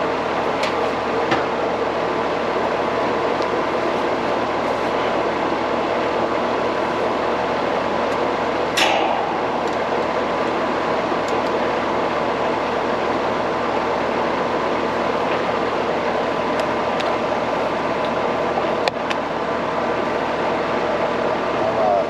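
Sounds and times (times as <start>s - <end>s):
machinery whooshing hum: 0.0s - 22.0s.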